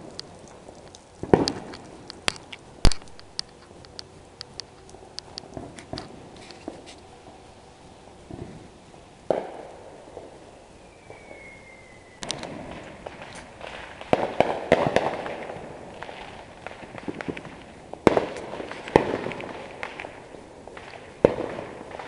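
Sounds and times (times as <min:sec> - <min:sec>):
firework bangs: 0:00.0 - 0:03.5, 0:08.3 - 0:10.4, 0:11.0 - 0:22.0
crackling firework reports: 0:00.0 - 0:22.0.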